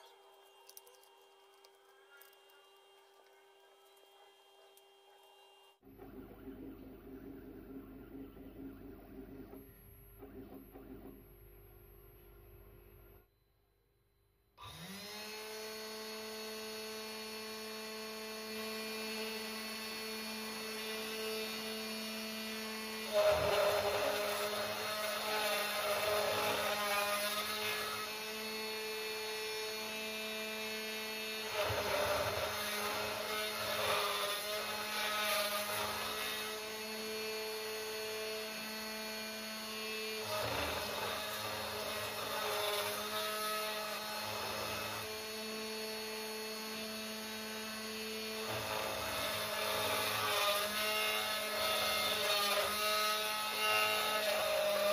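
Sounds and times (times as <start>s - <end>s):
end mill cutting aluminium: 18.6s - 54.9s.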